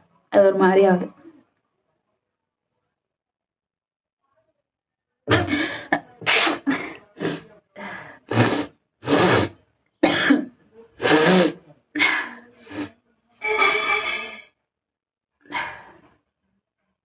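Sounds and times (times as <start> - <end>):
person coughing: 5.3 - 7.4, 8.3 - 11.6
person sneezing: 5.3 - 7.4, 8.2 - 10.4, 11.0 - 11.6, 12.7 - 12.9.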